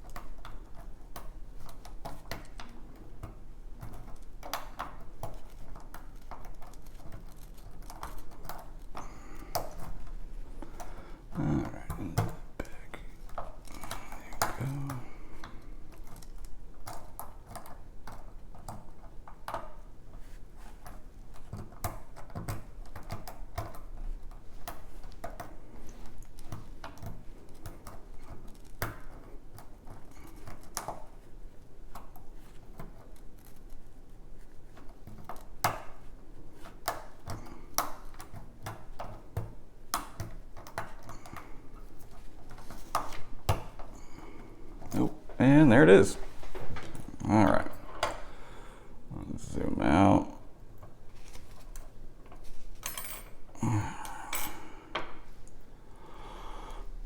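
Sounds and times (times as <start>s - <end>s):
lock pick clicking pins: 13.2s - 19.9s.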